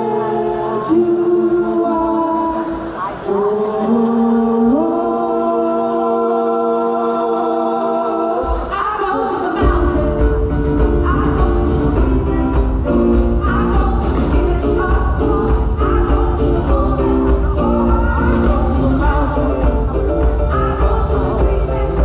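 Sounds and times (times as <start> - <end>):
choir singing: 0.0 - 22.0
band with bass and drums: 9.6 - 22.0.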